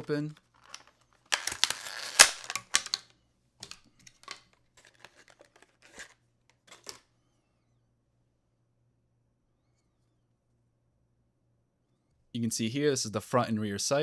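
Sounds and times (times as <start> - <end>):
packaging rustling and snapping: 0.0 - 7.1.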